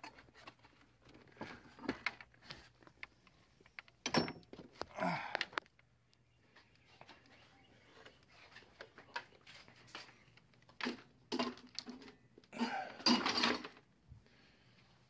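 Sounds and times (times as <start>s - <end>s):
parts and tools clattering: 0.0s - 2.8s, 3.7s - 5.6s, 10.7s - 13.9s.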